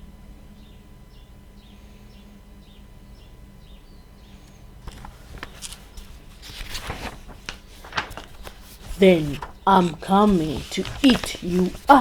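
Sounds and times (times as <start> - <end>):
low steady hum: 0.0 - 12.0
clicks and rustles: 4.8 - 12.0.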